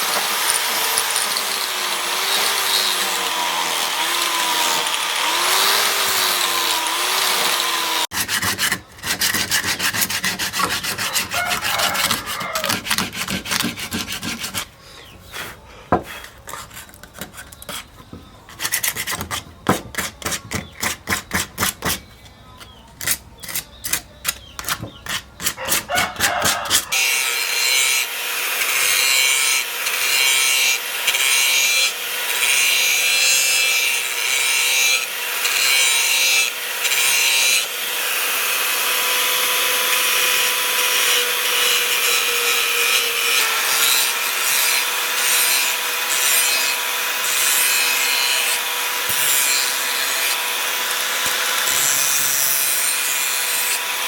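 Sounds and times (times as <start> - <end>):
hand tool rasping on knife: 0.0 - 27.0.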